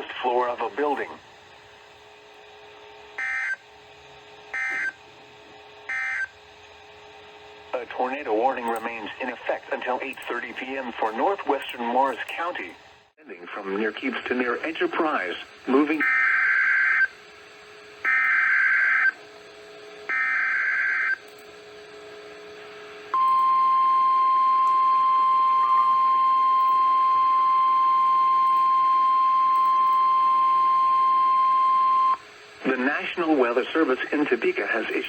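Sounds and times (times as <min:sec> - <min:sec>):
steady warning alarm tone: 0:03.2 - 0:03.7, 0:04.5 - 0:05.0, 0:05.9 - 0:06.4, 0:14.3 - 0:35.0.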